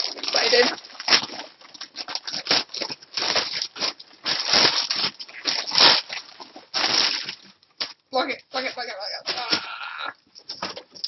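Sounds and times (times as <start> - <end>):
packaging crinkling: 0.0 - 8.0.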